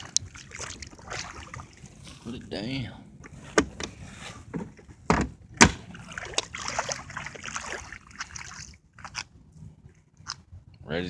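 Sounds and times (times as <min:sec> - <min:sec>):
clattering and scraping: 0:03.2 - 0:05.9
jet ski hood thumping shut: 0:03.5 - 0:06.0.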